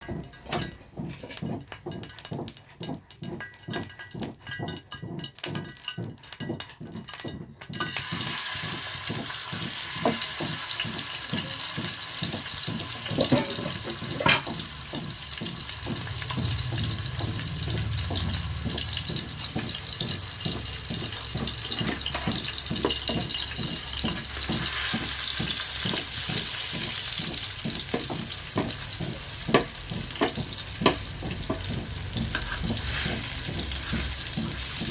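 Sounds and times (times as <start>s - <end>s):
chicken frying in hot oil: 0.0s - 34.9s.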